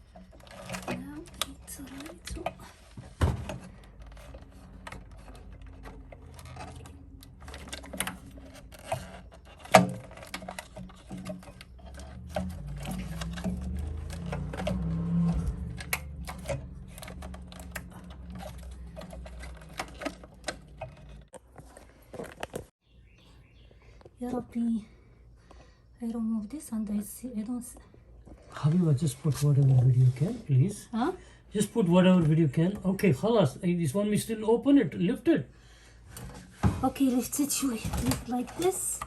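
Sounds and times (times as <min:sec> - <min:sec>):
clicks taps and rattles of tools: 0:00.0 - 0:22.7.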